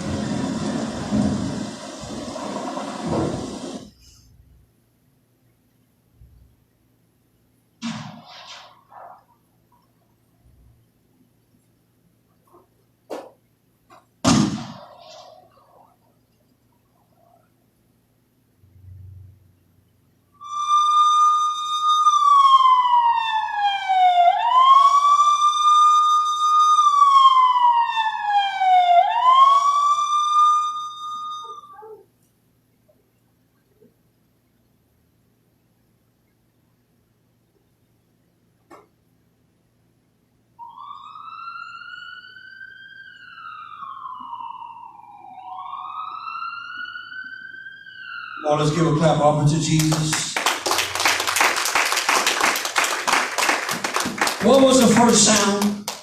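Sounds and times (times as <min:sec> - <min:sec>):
police siren wailing: 0:20.4 - 0:32.0, 0:40.6 - 0:51.0, 0:54.3 - 0:55.6.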